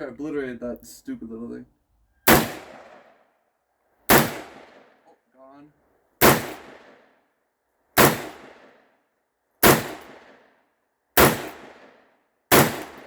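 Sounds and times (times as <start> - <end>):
gunshots with echo: 2.3 - 3.1, 4.1 - 4.8, 6.2 - 6.9, 8.0 - 8.6, 9.6 - 10.2, 11.2 - 11.8, 12.5 - 13.0.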